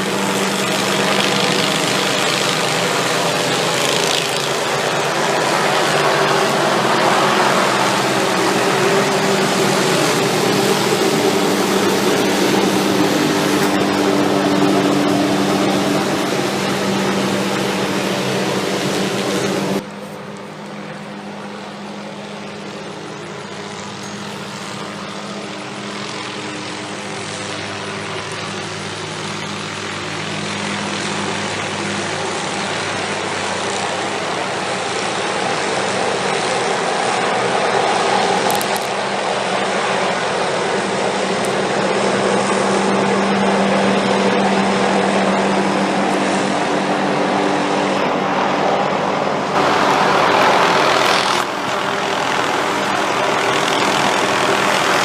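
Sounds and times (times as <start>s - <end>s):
helicopter running: 0.0s - 55.0s.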